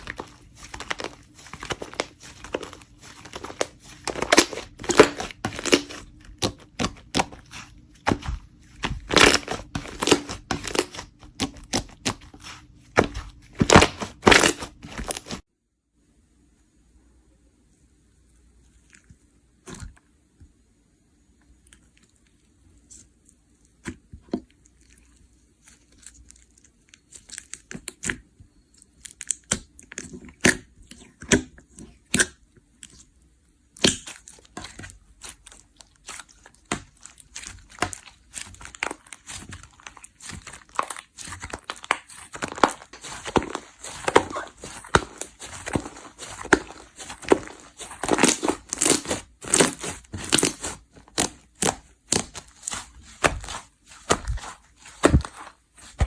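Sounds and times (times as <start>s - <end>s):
slime popping and crackling: 0.0s - 15.4s, 33.7s - 56.0s.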